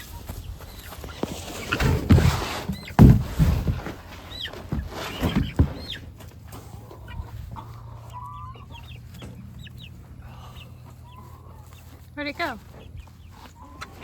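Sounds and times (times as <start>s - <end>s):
chicks peeping: 0.0s - 14.0s
hens clucking: 0.0s - 14.0s
loud thumps: 1.6s - 6.0s.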